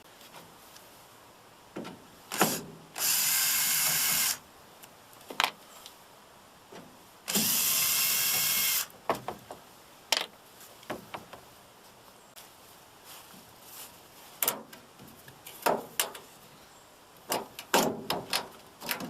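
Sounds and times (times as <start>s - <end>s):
cordless drill running: 2.4s - 4.4s, 7.3s - 8.9s.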